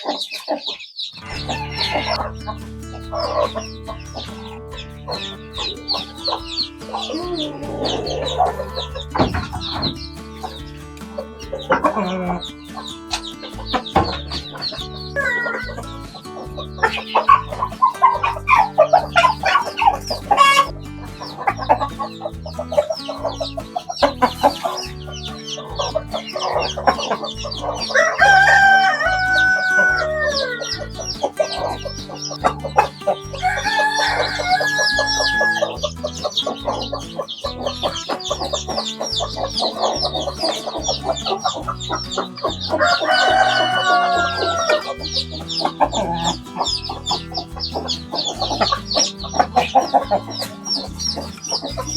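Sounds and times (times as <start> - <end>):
chickens clucking: 0.0 - 51.9
rooster crowing: 1.2 - 2.3, 7.1 - 9.7, 15.2 - 15.8, 27.9 - 31.0, 33.4 - 35.9, 42.7 - 46.4.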